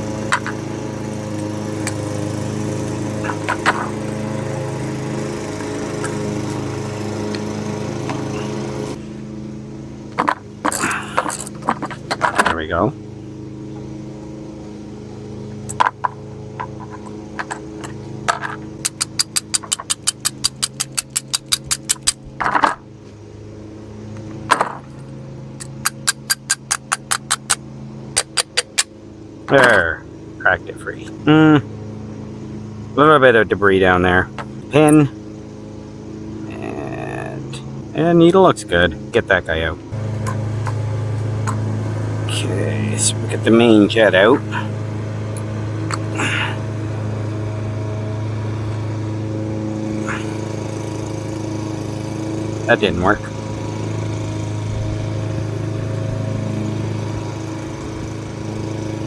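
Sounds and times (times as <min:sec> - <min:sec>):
loud scraping rasps: 0:00.0 - 0:09.2, 0:10.1 - 0:12.9, 0:15.6 - 0:22.9, 0:24.4 - 0:28.9, 0:39.9 - 0:47.4
motor humming: 0:00.0 - 0:59.0
ratchet wrench clicking: 0:16.8 - 0:22.3, 0:25.6 - 0:27.6, 0:28.2 - 0:28.9.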